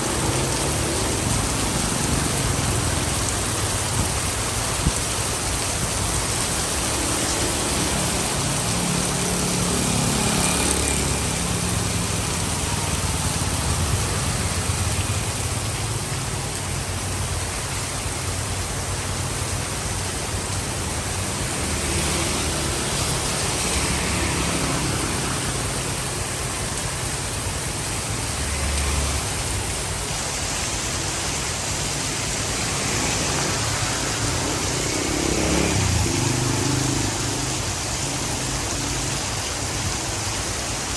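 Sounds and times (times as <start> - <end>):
rain on a street: 0.0 - 40.9
vehicles passing in rain: 0.0 - 40.9.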